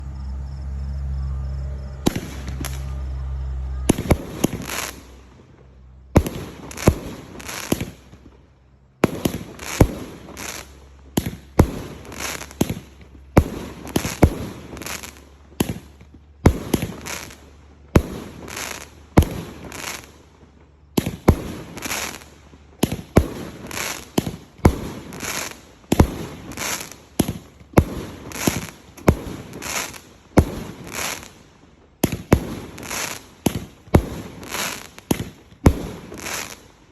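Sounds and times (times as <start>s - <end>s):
low hum: 0.0s - 6.2s
fireworks bangs with hiss: 2.0s - 36.9s.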